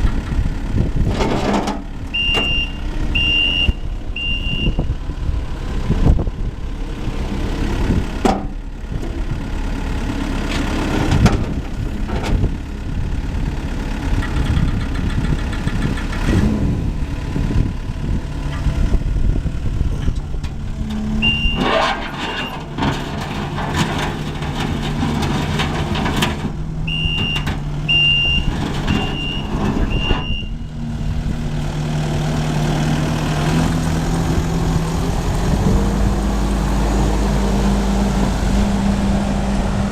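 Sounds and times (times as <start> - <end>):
diesel engine running: 0.0 - 39.9
backup alarm beeping: 2.2 - 4.9, 21.2 - 21.6, 26.9 - 30.7.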